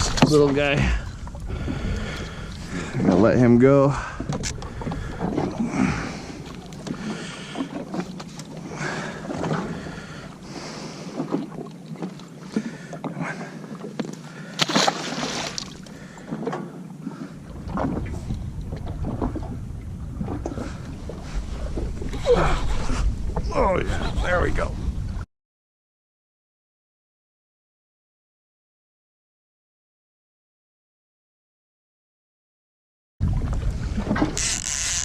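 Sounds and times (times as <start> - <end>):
water sloshing against hull: 0.0 - 25.2, 33.2 - 35.0.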